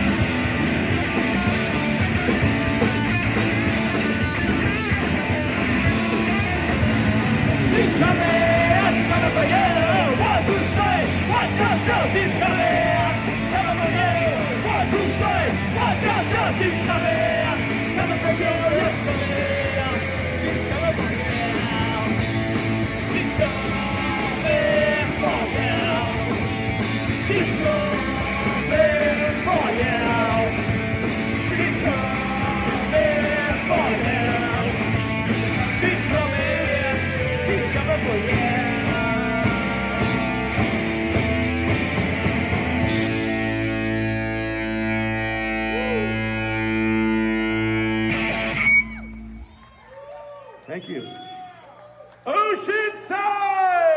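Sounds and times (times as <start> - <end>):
singer yelling and singing: 0.0 - 41.1, 52.3 - 53.9
punk rock band playing: 0.0 - 49.5.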